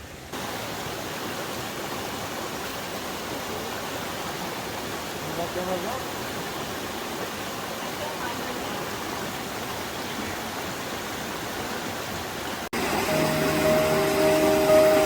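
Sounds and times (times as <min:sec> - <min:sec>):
waterfall rushing: 0:00.0 - 0:15.0.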